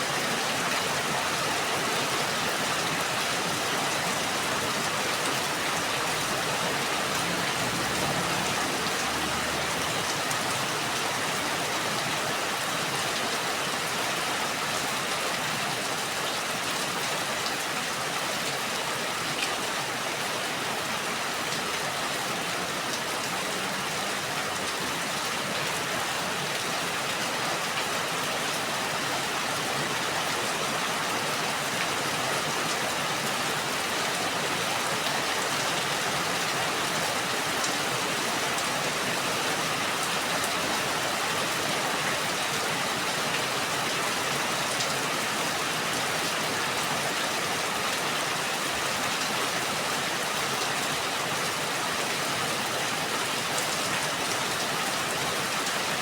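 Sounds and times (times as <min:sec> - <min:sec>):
steady rain hiss: 0:00.0 - 0:18.8.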